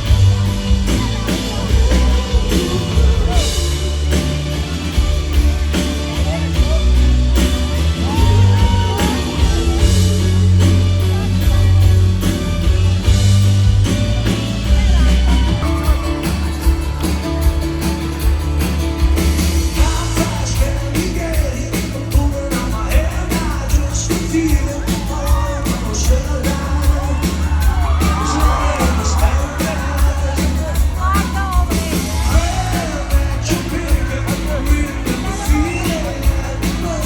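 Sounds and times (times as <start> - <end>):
person singing: 0.0 - 4.7, 19.7 - 37.0
live band music over pa: 0.0 - 37.0.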